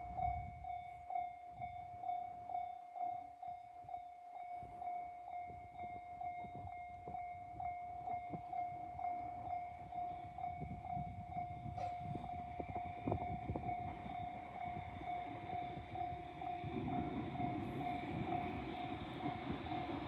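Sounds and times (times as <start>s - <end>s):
level-crossing warning bell ringing: 0.0s - 20.0s
electric locomotive rumble: 5.6s - 20.0s.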